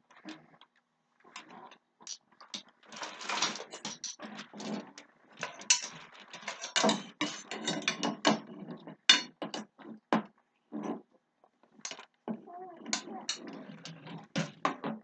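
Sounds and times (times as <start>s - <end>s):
plastic scraping: 1.3s - 10.1s, 11.8s - 15.0s
plastic clicks and knocks: 11.8s - 15.0s.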